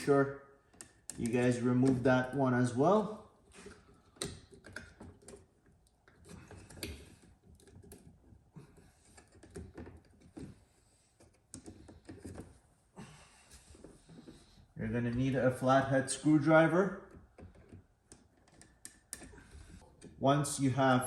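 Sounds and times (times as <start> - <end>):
electrical connectors clicking: 0.7 - 2.4, 17.0 - 20.2.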